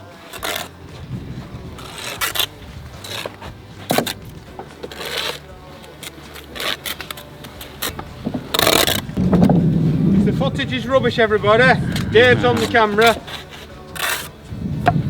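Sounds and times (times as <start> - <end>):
trowel scraping mortar: 0.0 - 9.2, 11.6 - 14.4.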